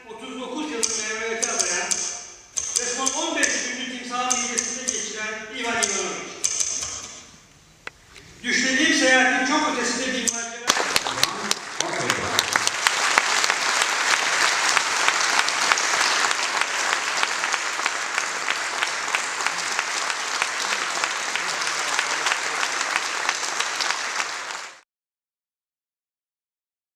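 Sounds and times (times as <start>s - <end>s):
audience applauding: 10.7s - 24.8s.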